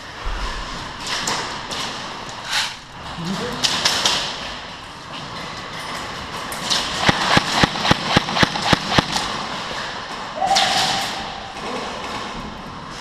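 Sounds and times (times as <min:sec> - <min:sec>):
airsoft gun shots: 0:07.0 - 0:09.3.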